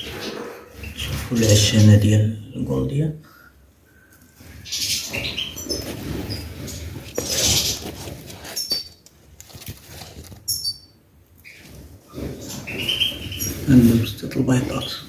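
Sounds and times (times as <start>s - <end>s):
finches chirping: 0.0s - 2.2s, 4.0s - 9.0s, 10.4s - 15.0s
rustling and handling noise: 5.5s - 10.8s.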